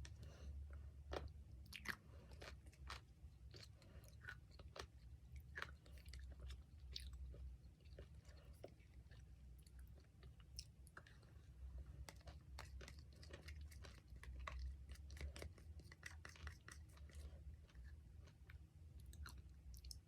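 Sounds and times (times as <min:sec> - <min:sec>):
chewing and crunching: 0:00.0 - 0:20.0.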